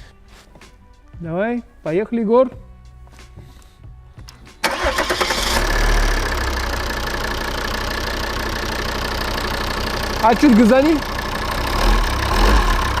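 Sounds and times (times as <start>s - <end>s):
diesel engine cranking and idling: 4.6s - 13.0s.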